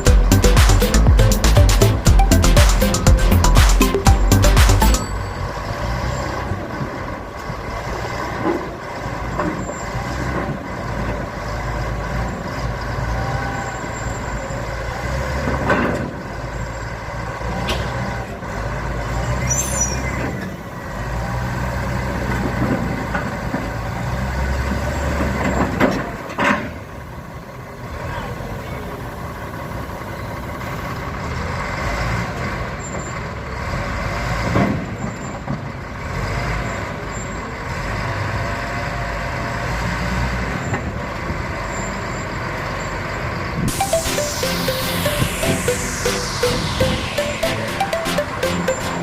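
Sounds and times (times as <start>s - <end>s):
brief squeal: 19.4s - 20.5s.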